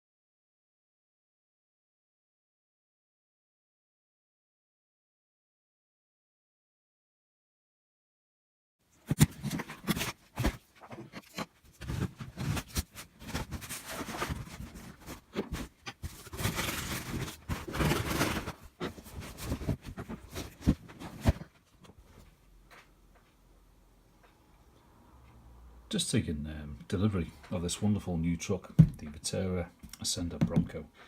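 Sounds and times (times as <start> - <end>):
cardboard box being handled: 9.1 - 21.5.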